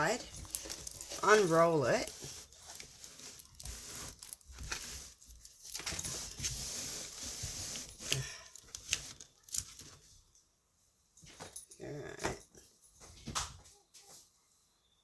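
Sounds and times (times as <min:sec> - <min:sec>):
plastic film rustling and crinkling: 0:00.0 - 0:10.0.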